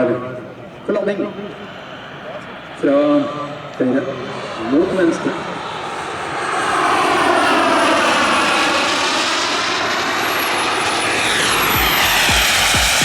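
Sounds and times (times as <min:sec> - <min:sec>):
model jet turbine whine: 0:00.3 - 0:13.0
music with steady beat: 0:11.6 - 0:13.0.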